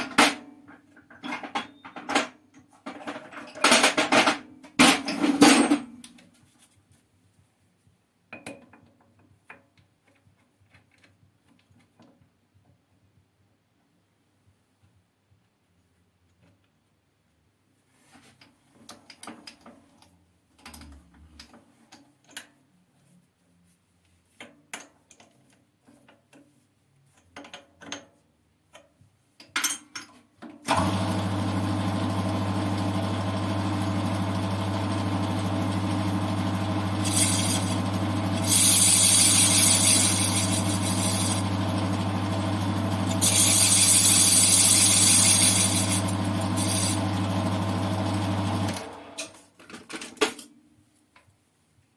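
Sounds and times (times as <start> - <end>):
tools clicking and knocking: 27.2 - 30.2
metal lathe humming: 30.8 - 49.2
lathe hiss: 36.8 - 48.8.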